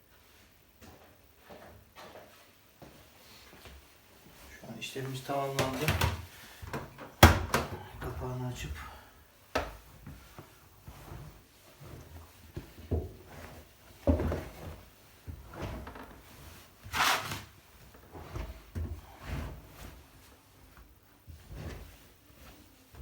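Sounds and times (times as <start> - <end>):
knocks and clunks at washing machine door: 5.6 - 7.9.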